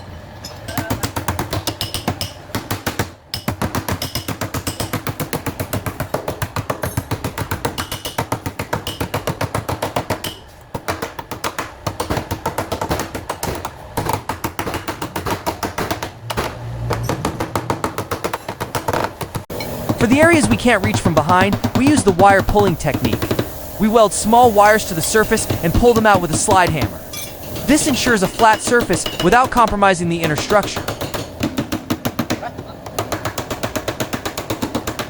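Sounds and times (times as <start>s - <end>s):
hammer striking steel panel: 20.0s - 23.5s, 24.3s - 32.3s.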